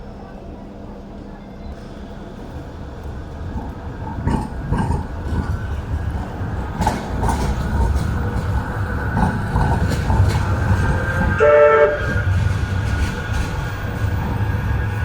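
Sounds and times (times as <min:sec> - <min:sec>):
tram rumbling: 0:00.0 - 0:15.0
tram warning horn: 0:03.2 - 0:15.0.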